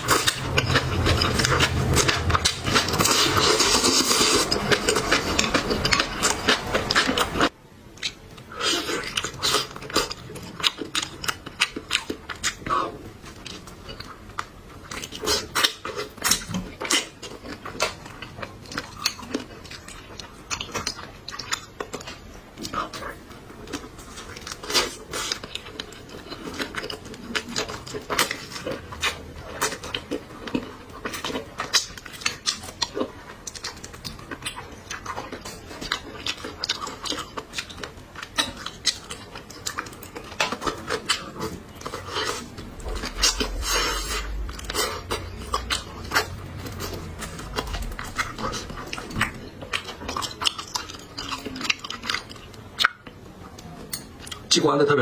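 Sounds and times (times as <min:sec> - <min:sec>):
wet chewing and lip smacking: 0:00.0 - 0:54.5.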